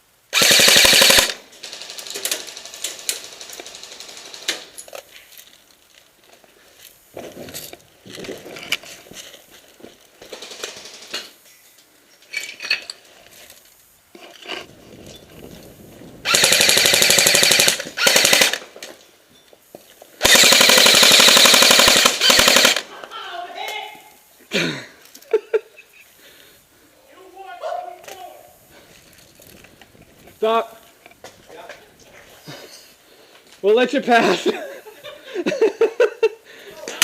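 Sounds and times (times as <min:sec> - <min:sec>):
airsoft gun full-auto bursts: 0:00.3 - 0:04.5, 0:16.2 - 0:18.7, 0:20.2 - 0:22.9.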